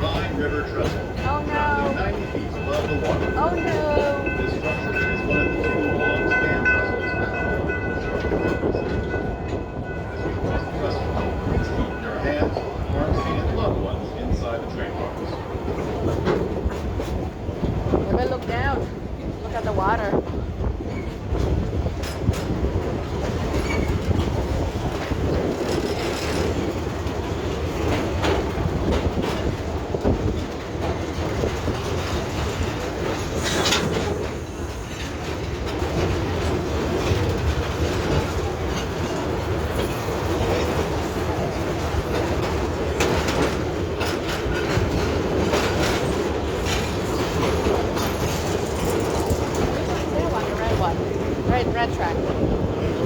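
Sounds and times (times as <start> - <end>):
train cars rumbling on track: 0.0 - 53.0
wheels clicking over rail joints: 20.3 - 53.0.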